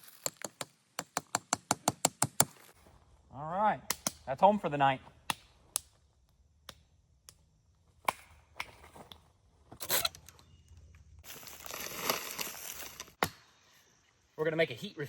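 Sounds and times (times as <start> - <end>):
sharp snaps: 3.8 - 4.4, 5.2 - 6.0
crinkling rustles: 11.2 - 13.2.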